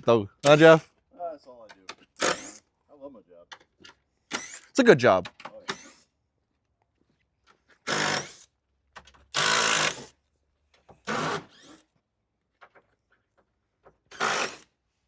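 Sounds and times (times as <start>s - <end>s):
handheld power tool running: 2.2s - 2.6s, 4.3s - 4.7s, 7.9s - 8.4s, 9.4s - 10.1s, 14.1s - 14.7s.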